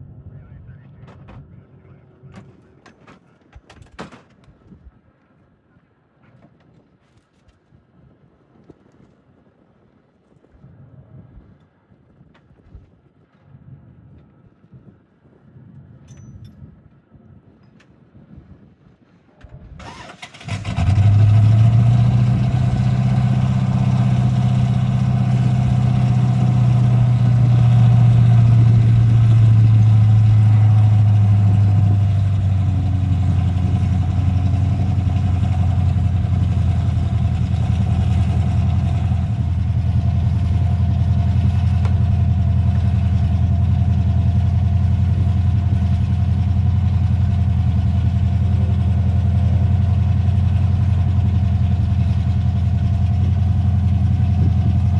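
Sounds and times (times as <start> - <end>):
truck engine idling: 20.9 - 54.9.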